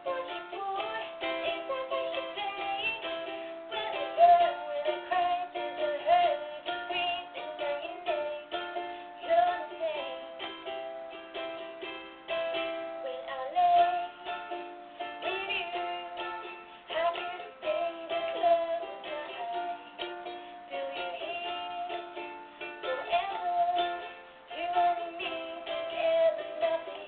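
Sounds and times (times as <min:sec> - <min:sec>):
guitar playing chords: 0:00.0 - 0:05.2
person singing a pop ballad: 0:16.9 - 0:22.0, 0:22.8 - 0:27.0.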